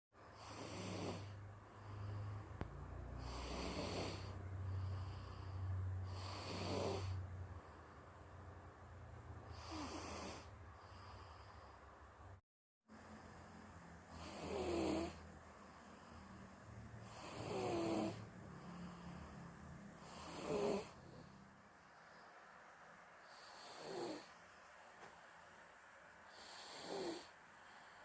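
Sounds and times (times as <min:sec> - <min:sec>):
steady low hum: 0:00.2 - 0:28.0
person snoring: 0:00.3 - 0:08.0, 0:09.4 - 0:11.9, 0:14.1 - 0:21.4, 0:23.2 - 0:24.4, 0:26.3 - 0:28.0.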